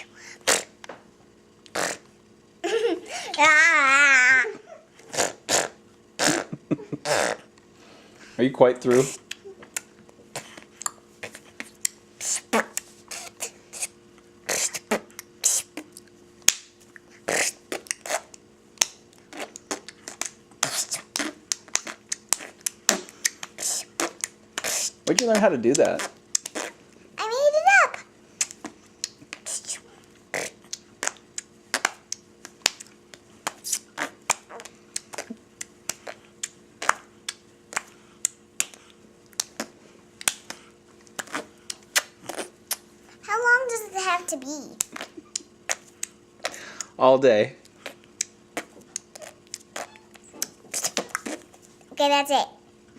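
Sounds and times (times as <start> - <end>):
mouth clicks and pops: 1.6 - 2.1, 14.5 - 26.8, 27.9 - 42.9, 44.8 - 46.9, 47.6 - 51.5
girl making mouth noises: 3.2 - 7.4, 29.3 - 31.2
child making clicking noises: 25.1 - 26.6, 27.2 - 29.8, 43.6 - 45.5.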